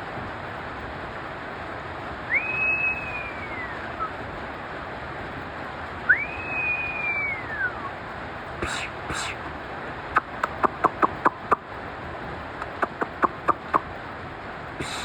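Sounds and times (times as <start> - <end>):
rain hissing: 0.0 - 10.5, 11.2 - 15.0
long high cries: 2.3 - 4.1, 6.1 - 7.9, 14.8 - 15.0.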